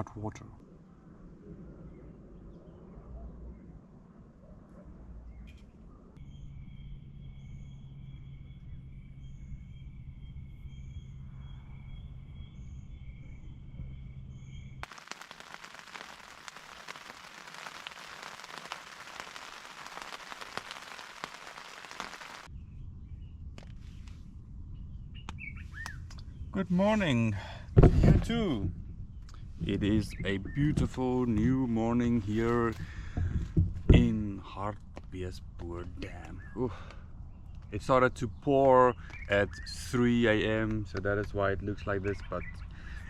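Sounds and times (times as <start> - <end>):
outdoor ambience: 0.0 - 43.0
heavy rain pattering: 14.8 - 22.5.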